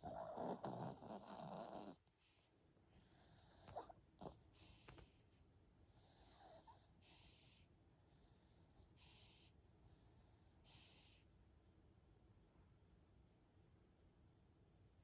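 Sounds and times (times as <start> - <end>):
dog snoring faintly: 0.0 - 11.3.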